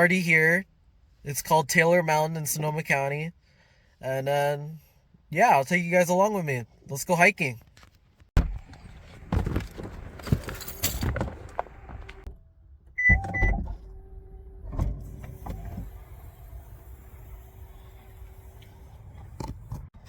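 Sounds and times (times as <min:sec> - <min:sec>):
thump: 0:08.4 - 0:10.0
rustling of gear being handled: 0:08.9 - 0:12.3
short high beeps: 0:13.0 - 0:13.6.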